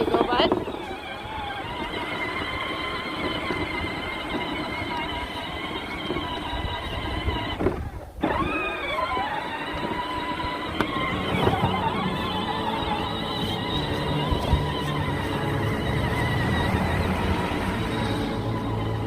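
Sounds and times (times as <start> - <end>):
vehicle motor whining: 0.0 - 19.0.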